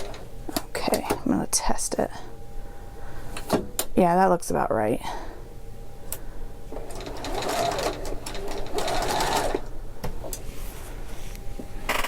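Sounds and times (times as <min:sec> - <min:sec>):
sewing machine stitching: 0:06.8 - 0:09.7.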